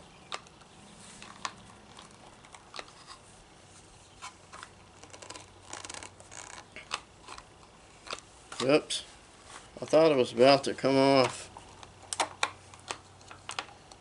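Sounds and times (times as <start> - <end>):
plastic clicks and rattles: 0.3 - 3.2, 4.5 - 8.7, 11.2 - 14.0.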